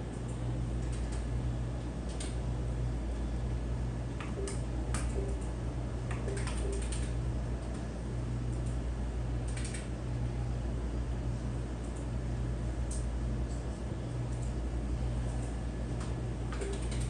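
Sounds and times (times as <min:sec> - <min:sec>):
steady low hum: 0:00.0 - 0:17.0
console keys clicking: 0:06.1 - 0:07.2, 0:09.5 - 0:09.8, 0:16.5 - 0:17.0.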